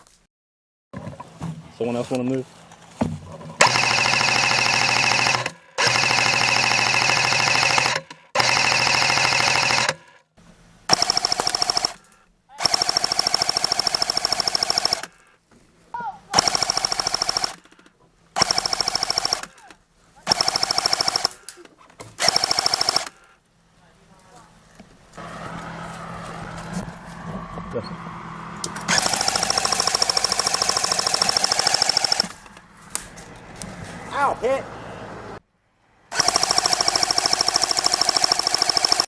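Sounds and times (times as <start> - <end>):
airsoft gun firing bursts: 3.6 - 10.0, 10.9 - 15.3, 16.4 - 21.5, 22.2 - 23.3, 28.9 - 32.4, 36.1 - 39.0.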